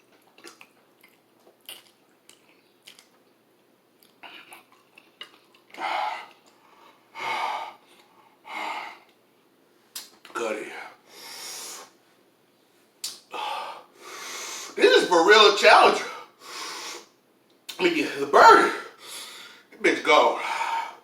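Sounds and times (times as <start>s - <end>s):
soft chewing: 0.0s - 6.7s
loud breathy huffs: 5.8s - 9.1s, 11.1s - 11.9s, 13.3s - 14.8s, 16.0s - 17.2s, 18.9s - 19.7s.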